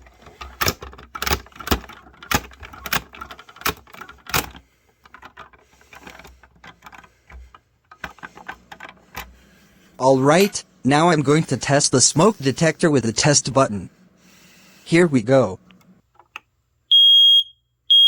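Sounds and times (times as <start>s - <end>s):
sharp clicks and knocks: 0.0s - 9.4s, 15.7s - 16.5s.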